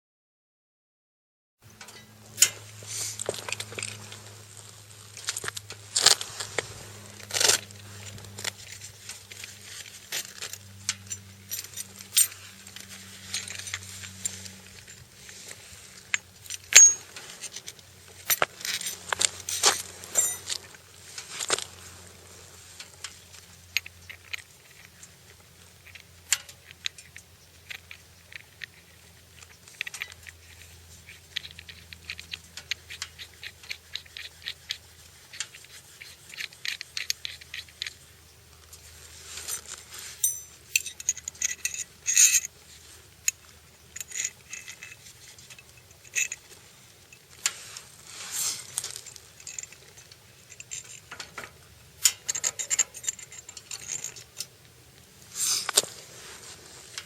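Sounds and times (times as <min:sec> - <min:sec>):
metal parts clicking and clinking: 0:07.2 - 0:21.7, 0:22.8 - 0:38.0, 0:39.4 - 0:42.6, 0:43.2 - 0:47.6, 0:48.4 - 0:54.6.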